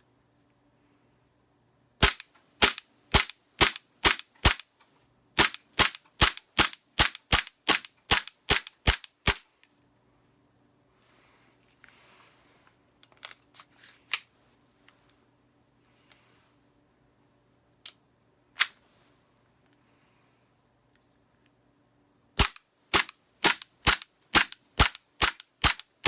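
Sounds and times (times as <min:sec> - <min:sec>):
airsoft pistol shots: 0:02.0 - 0:04.6, 0:05.4 - 0:09.4, 0:22.4 - 0:25.9.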